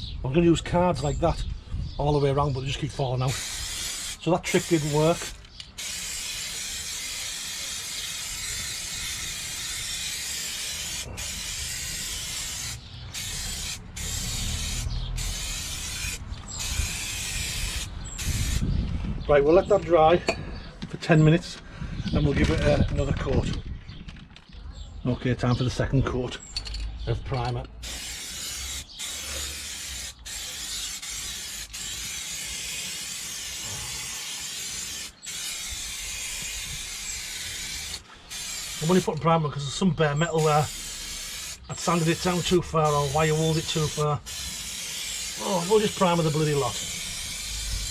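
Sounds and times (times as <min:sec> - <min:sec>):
spray can hissing: 0:03.3 - 0:18.6, 0:27.8 - 0:39.2, 0:40.4 - 0:47.9.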